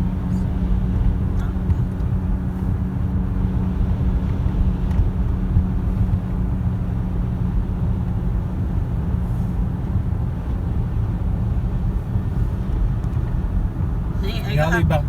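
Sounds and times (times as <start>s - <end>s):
car engine drone: 0.0s - 15.0s
road rumble: 0.0s - 15.0s.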